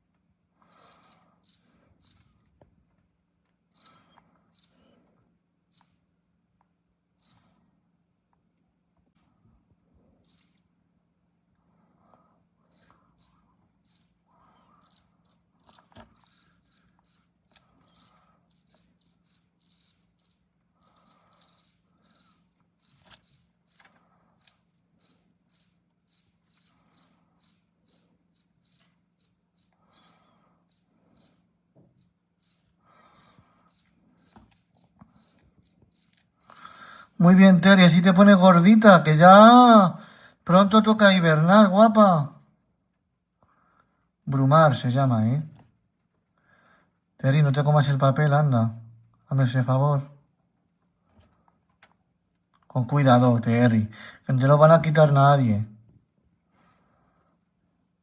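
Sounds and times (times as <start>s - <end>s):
cricket chirping: 0.8s - 2.5s, 3.7s - 4.8s, 5.7s - 6.0s, 7.2s - 7.6s, 10.2s - 10.6s, 12.7s - 14.2s, 14.8s - 31.4s, 32.0s - 37.2s.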